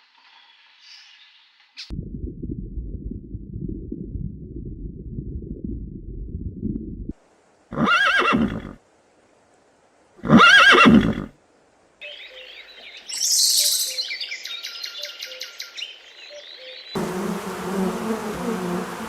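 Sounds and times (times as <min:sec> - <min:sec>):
low muffled rumble: 0:01.9 - 0:07.2
horse whinnying: 0:07.7 - 0:08.8, 0:10.2 - 0:11.3.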